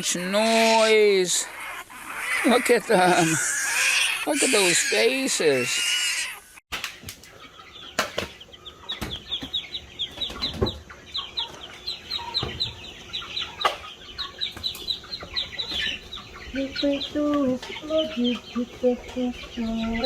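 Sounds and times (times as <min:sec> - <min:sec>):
chicks peeping: 0:00.0 - 0:20.0.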